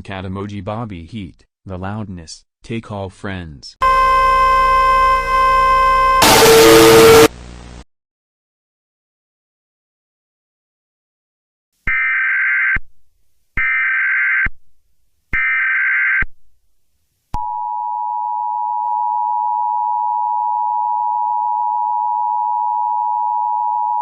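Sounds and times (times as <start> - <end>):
two-tone attention signal: 3.8 - 7.3
buzzy digital data tone: 3.8 - 7.5.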